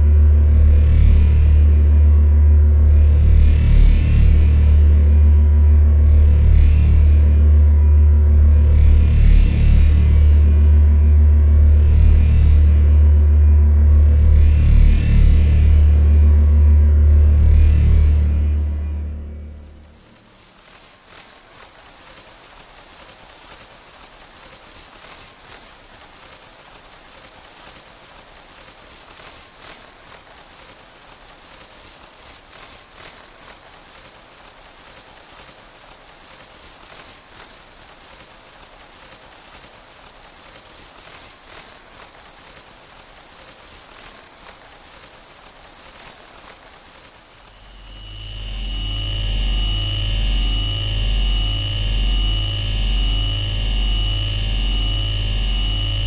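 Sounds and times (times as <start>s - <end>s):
electric force field hiss: 19.2s - 56.0s.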